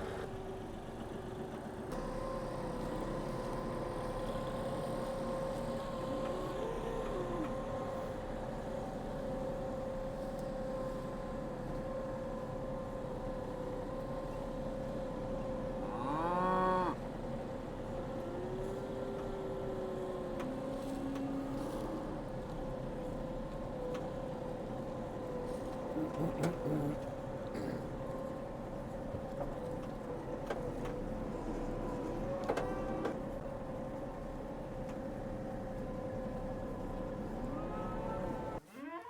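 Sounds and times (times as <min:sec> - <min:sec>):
cattle mooing: 0:15.8 - 0:17.0, 0:37.5 - 0:39.0.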